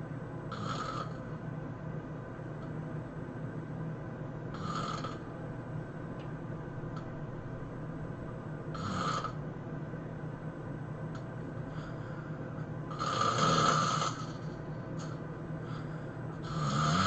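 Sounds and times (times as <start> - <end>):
steady low hum: 0.0 - 17.0
person snoring: 0.5 - 1.2, 4.5 - 5.3, 8.7 - 9.4, 12.9 - 17.0.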